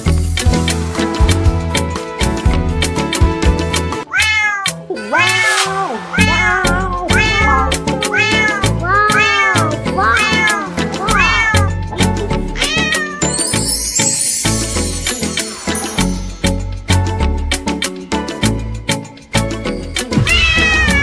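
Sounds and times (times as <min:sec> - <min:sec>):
cat meowing: 0:04.0 - 0:13.5, 0:20.3 - 0:21.0.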